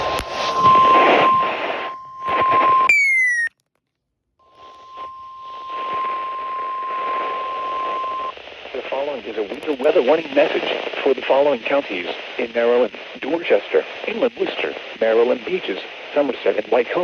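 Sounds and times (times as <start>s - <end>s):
steady alarm tone: 0.0s - 3.3s, 4.4s - 8.3s
radio static hiss: 0.0s - 3.5s, 4.6s - 17.0s
short falling beep: 0.2s - 3.5s.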